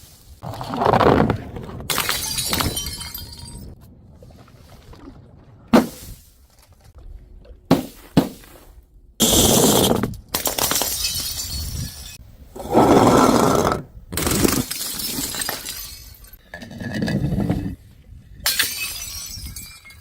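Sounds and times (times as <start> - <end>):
glass bottles shattering: 1.9 - 3.8, 9.8 - 12.2, 14.5 - 16.4, 18.4 - 20.0.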